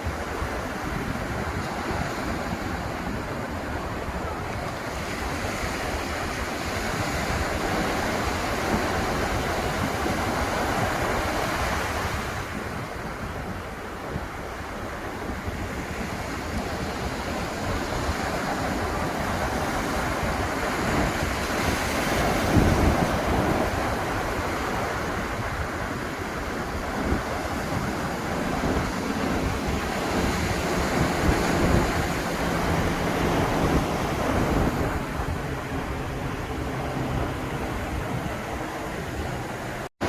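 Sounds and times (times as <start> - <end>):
ocean surf breaking: 0.0 - 40.0
wind on microphone: 0.0 - 40.0.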